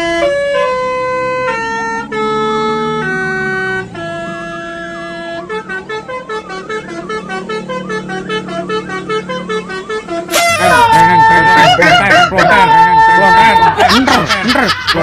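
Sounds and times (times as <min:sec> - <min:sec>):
multi-tone bus horn tune: 0:00.0 - 0:14.3.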